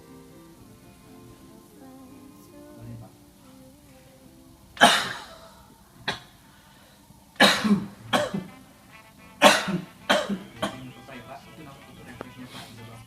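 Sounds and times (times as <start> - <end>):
man coughing: 4.8 - 5.4, 7.4 - 8.5, 9.4 - 11.0.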